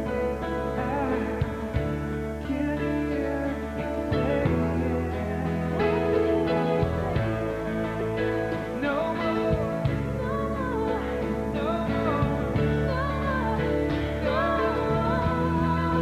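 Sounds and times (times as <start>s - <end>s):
guitar: 0.0s - 16.0s
person singing: 0.0s - 16.0s.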